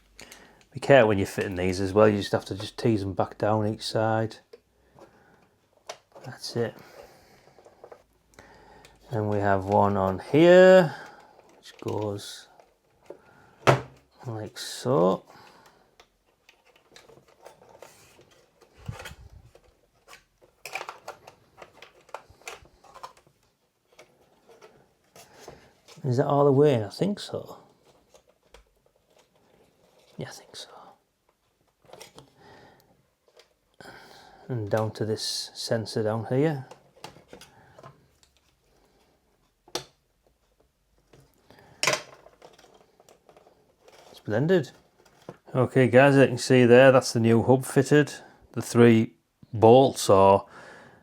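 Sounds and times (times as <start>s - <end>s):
plastic parts clicking: 15.8s - 26.0s, 39.6s - 45.4s.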